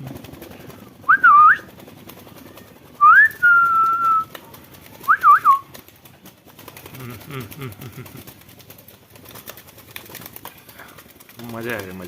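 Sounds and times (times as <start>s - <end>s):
person whistling: 1.1s - 1.6s, 3.0s - 4.3s, 5.1s - 5.6s.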